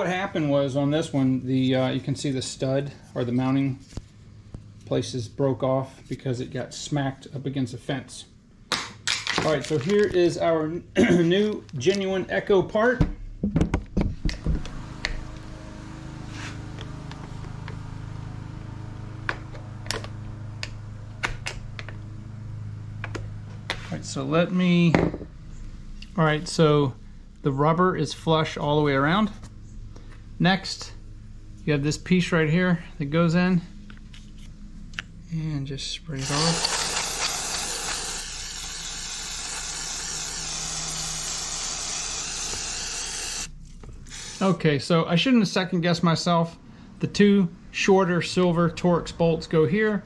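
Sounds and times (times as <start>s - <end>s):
steady low hum: 10.1s - 50.0s
aerosol spray can hissing: 36.2s - 44.6s.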